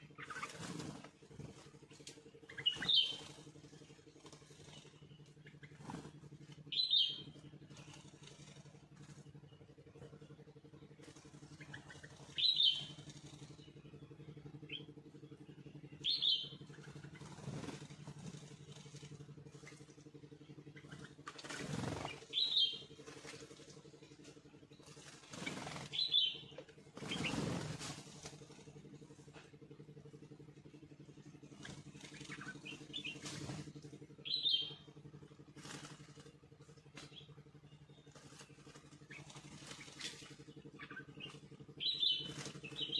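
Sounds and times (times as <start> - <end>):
wings rustling: 0.0 - 9.3, 16.2 - 20.1, 20.8 - 29.6, 31.4 - 34.7, 35.6 - 37.4, 38.1 - 42.9
birds chirping: 0.0 - 42.9
low motor hum: 0.0 - 42.9.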